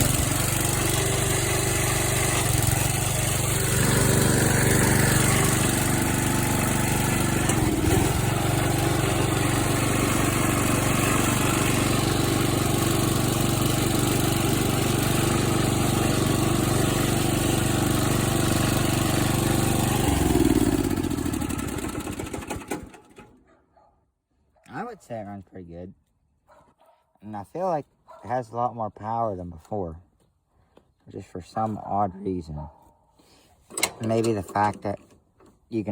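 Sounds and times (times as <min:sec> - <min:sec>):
lawnmower engine running: 0:00.0 - 0:23.4, 0:33.7 - 0:35.5.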